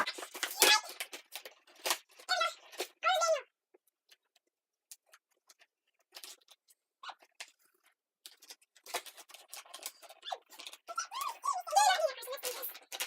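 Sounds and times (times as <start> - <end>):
packaging rustling and crackling: 0.0 - 3.0, 4.1 - 11.3.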